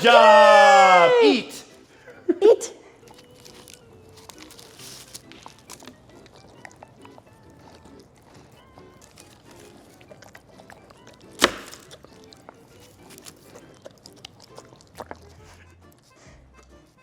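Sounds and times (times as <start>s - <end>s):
faint background music: 0.0s - 17.0s
dogs chewing and licking: 3.0s - 17.0s.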